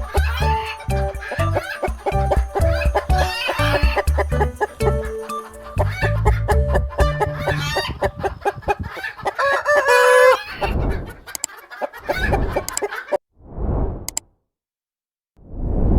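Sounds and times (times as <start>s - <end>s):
chickens clucking: 0.0s - 13.2s
rooster crowing: 0.1s - 4.8s, 5.7s - 10.8s.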